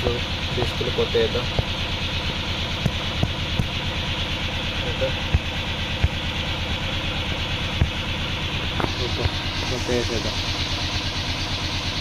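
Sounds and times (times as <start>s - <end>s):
vehicle engine idling: 0.0s - 12.0s
sharp knocks: 2.8s - 3.8s.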